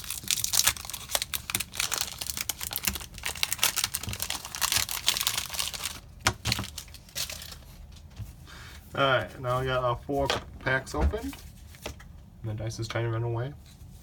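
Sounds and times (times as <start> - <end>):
foil wrappers crinkling and tearing: 0.0 - 7.8.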